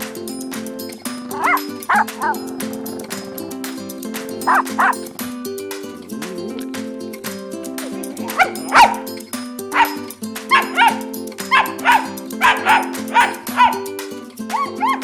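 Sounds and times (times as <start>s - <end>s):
background music with held notes: 0.0s - 15.0s
dog yipping: 1.3s - 2.4s, 4.5s - 5.0s, 8.2s - 9.1s, 9.7s - 13.9s, 14.5s - 15.0s.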